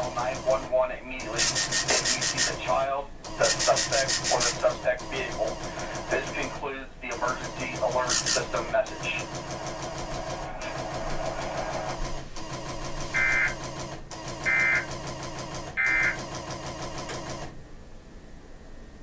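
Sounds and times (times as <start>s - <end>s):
background hiss and hum: 0.0s - 16.3s, 16.9s - 19.0s
two-tone digital data bursts: 1.3s - 2.7s, 3.4s - 6.5s, 7.2s - 9.4s, 13.1s - 13.6s, 14.4s - 14.9s, 15.8s - 16.2s.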